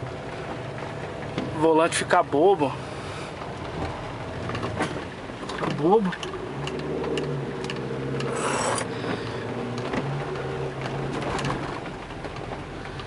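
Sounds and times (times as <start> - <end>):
car engine hum inside cabin: 0.0 - 13.0
small clicks and rattles: 3.7 - 13.0
rubbing scrape: 8.3 - 8.9.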